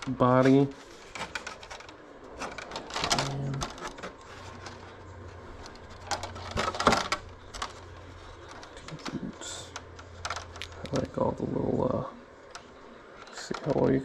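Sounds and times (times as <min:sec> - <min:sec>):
faint low hum: 0:00.0 - 0:14.0
plastic clicks and rattles: 0:01.1 - 0:04.8, 0:05.6 - 0:11.2.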